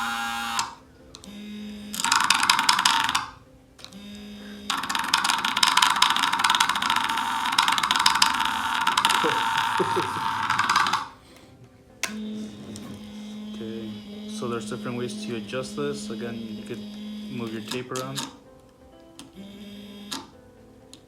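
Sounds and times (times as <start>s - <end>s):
vibration motor buzzing: 0.0s - 3.3s, 3.9s - 11.1s.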